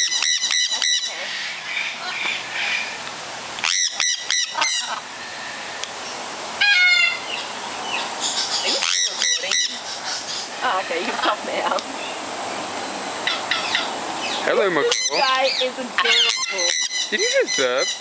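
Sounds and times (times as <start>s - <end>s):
parrot screeching: 0.0s - 3.0s, 3.6s - 5.7s, 6.6s - 7.4s, 8.2s - 11.0s, 13.2s - 14.0s, 14.9s - 18.0s.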